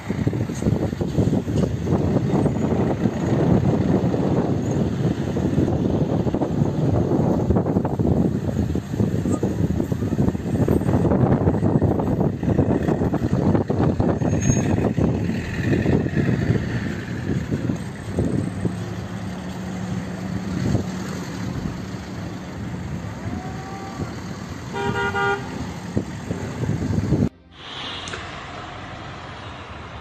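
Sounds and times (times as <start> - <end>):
street traffic: 0.0 - 30.0
wind buffeting microphone: 0.0 - 30.0
car horn honk: 24.7 - 25.7.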